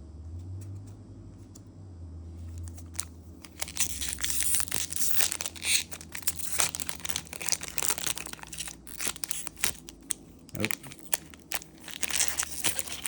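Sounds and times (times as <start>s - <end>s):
foil wrapper crinkling and tearing: 2.6s - 13.0s.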